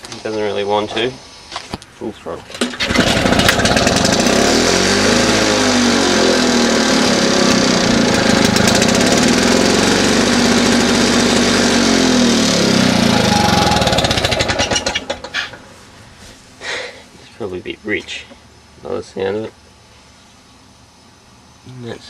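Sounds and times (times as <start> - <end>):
lawn mower engine running: 2.5 - 15.8.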